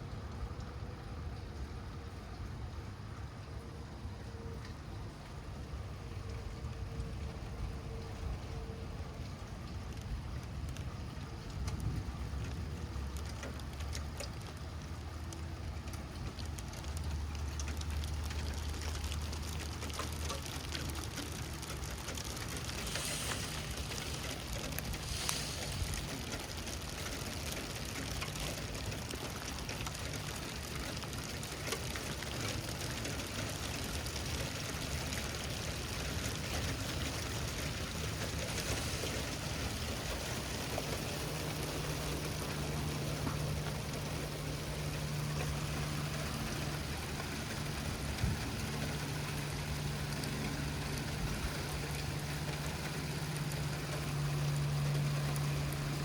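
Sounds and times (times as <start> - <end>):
light rain falling: 0.0 - 56.0
low steady hum: 0.0 - 56.0.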